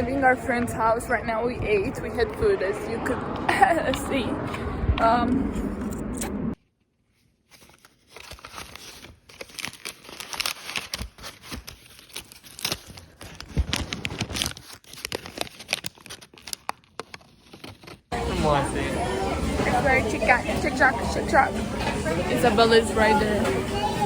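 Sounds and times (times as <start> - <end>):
crinkling and rustling: 6.6 - 18.2.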